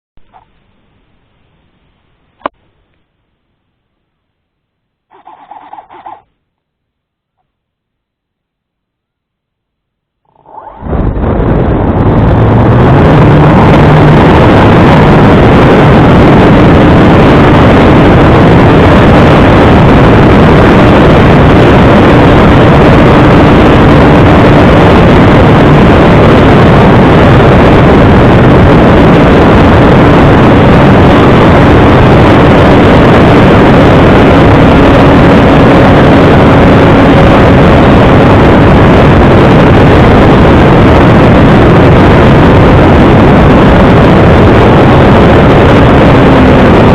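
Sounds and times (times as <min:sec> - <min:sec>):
rushing wind noise: 0:10.2 - 0:46.9.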